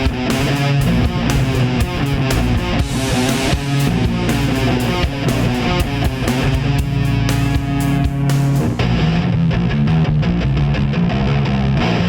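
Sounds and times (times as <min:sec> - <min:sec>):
drum hits: 0:00.0 - 0:08.8
distorted electric guitar riffing: 0:00.0 - 0:12.0.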